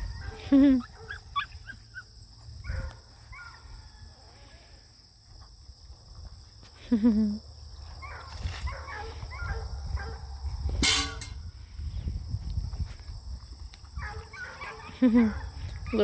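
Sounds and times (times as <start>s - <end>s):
puppies whining and squealing: 0.0s - 3.6s.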